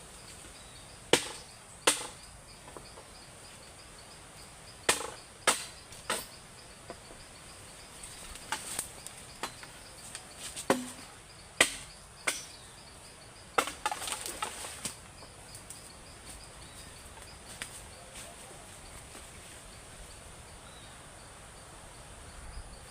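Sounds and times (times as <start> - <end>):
high insect trill: 0.0 - 22.9
sharp wooden knocks: 1.1 - 2.8, 4.9 - 7.1, 10.6 - 12.6.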